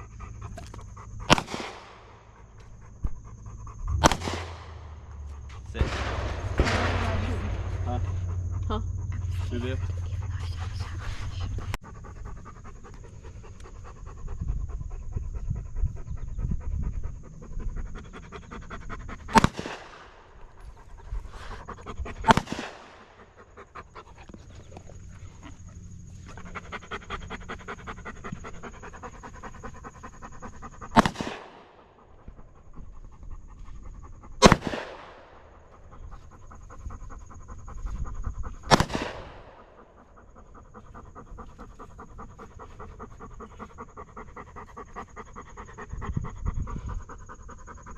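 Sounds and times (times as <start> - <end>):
dog panting: 0.0 - 47.9
gunshots with echo: 1.3 - 2.2, 4.0 - 4.9, 5.8 - 8.2, 19.3 - 20.2, 22.3 - 23.0, 30.9 - 31.7, 34.4 - 35.4, 38.7 - 39.7.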